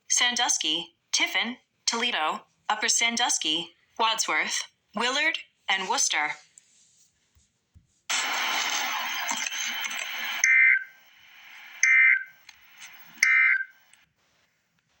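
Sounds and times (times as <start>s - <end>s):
hiss-like static: 8.1s - 13.3s
warbling digital data tones: 8.2s - 13.9s.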